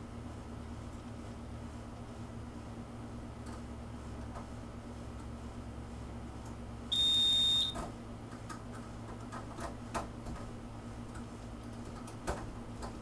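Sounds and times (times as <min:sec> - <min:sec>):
high-pitched beep: 0:06.9 - 0:07.8.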